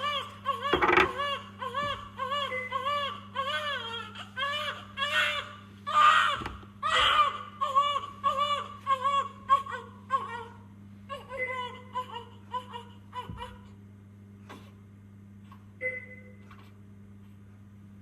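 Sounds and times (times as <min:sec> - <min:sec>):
newborn baby crying: 0:00.0 - 0:13.7
low steady hum: 0:00.0 - 0:18.0.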